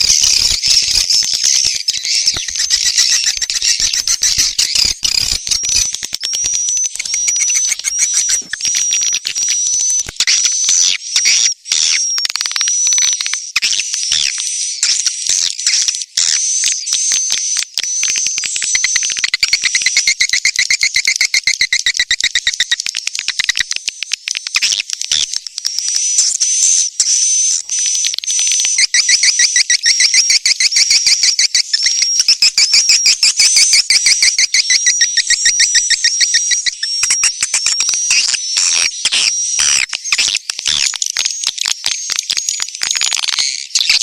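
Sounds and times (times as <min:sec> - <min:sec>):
swiftlet chirps twittering: 0:00.0 - 0:12.0, 0:25.8 - 0:42.7.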